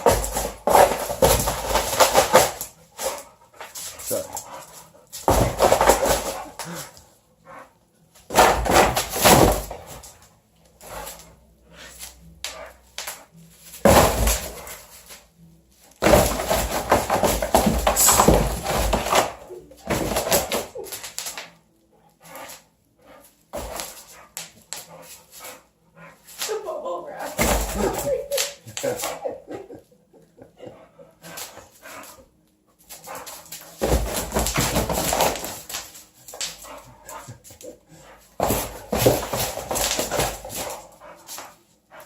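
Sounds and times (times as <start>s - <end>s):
dog scuffling and thumps: 0.0s - 6.7s, 8.3s - 10.1s, 13.8s - 15.1s, 16.0s - 20.7s, 23.6s - 25.6s, 32.9s - 42.0s.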